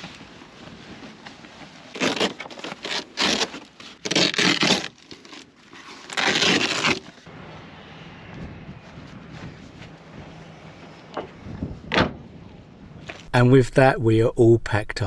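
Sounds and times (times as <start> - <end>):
rustling crumpling and scraping gear: 0.0 - 7.3.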